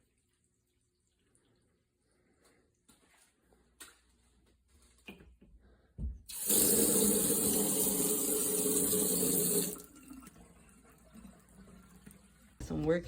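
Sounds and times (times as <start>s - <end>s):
water tap running: 6.3s - 13.0s.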